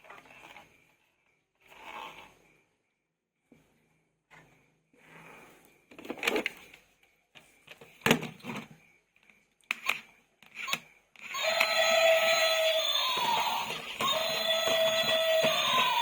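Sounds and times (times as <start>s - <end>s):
toy electronic alarm sound: 10.6s - 16.0s.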